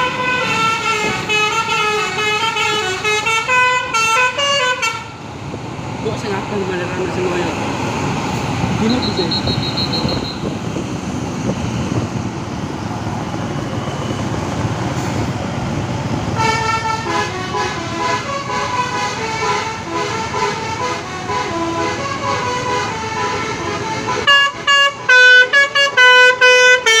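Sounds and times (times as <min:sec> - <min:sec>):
bus air horn playing a tune: 0:00.0 - 0:05.2, 0:08.9 - 0:10.6, 0:16.4 - 0:27.0
engine and traffic rumble: 0:00.0 - 0:27.0.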